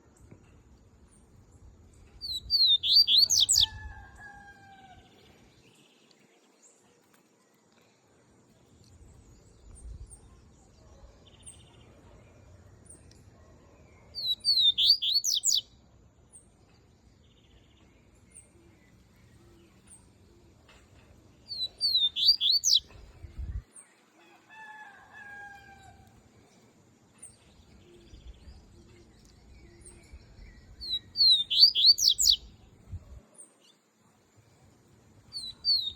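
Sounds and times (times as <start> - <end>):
bird warbling song: 2.2 - 3.8, 14.2 - 15.7, 21.5 - 23.6, 27.8 - 32.6, 35.4 - 35.9.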